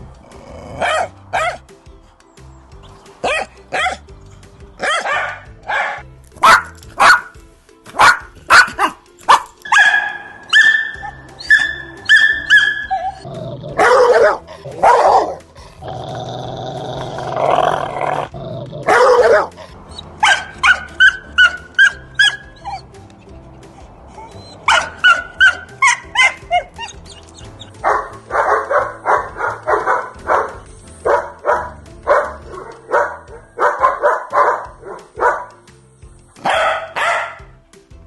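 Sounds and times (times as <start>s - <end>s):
dogs barking: 0.0s - 1.7s, 3.2s - 4.1s, 4.8s - 16.2s, 17.2s - 35.7s, 36.3s - 37.6s
drawn-out dog vocalisation: 0.6s - 1.6s, 8.0s - 35.5s
small dog yapping: 8.0s - 15.3s, 20.2s - 22.8s, 24.2s - 30.0s.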